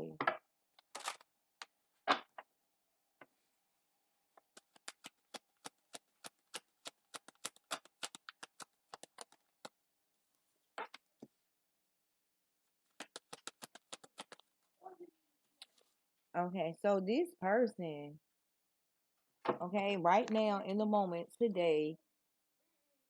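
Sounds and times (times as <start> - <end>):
cards shuffling clicks: 0.8 - 1.3, 4.4 - 9.8, 12.9 - 14.5
cards tapping and thumping: 4.4 - 9.7, 13.0 - 14.4.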